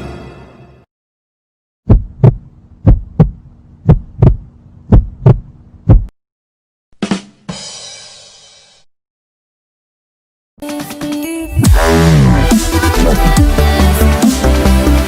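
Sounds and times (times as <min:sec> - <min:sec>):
heartbeat thumps: 0:01.8 - 0:06.1.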